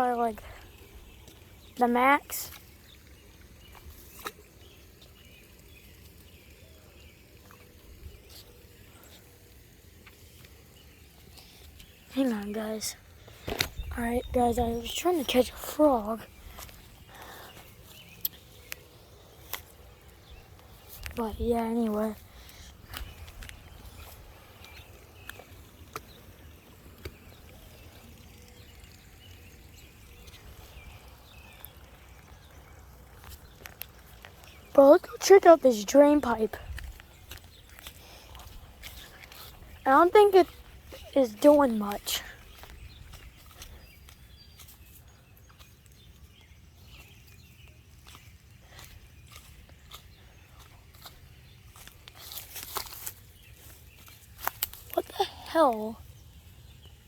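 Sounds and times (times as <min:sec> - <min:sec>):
wind rumble on microphone: 0:13.6 - 0:15.0.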